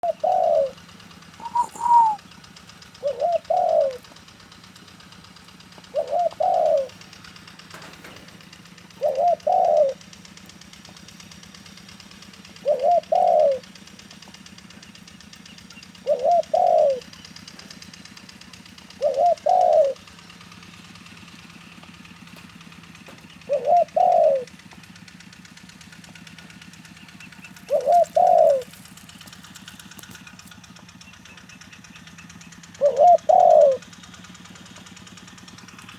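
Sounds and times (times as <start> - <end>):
dove cooing: 0.0 - 14.5, 15.2 - 20.2, 23.1 - 24.7, 27.4 - 29.0, 32.6 - 34.7.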